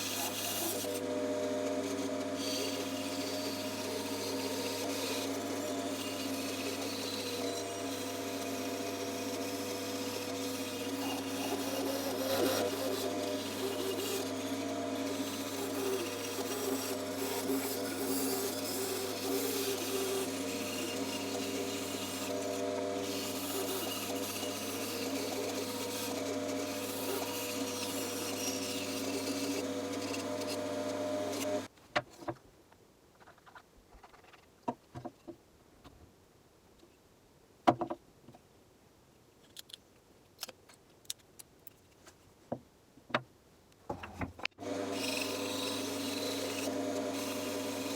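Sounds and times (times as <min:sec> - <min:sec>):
bandsaw cutting wood: 0:00.0 - 0:31.7, 0:44.6 - 0:47.9.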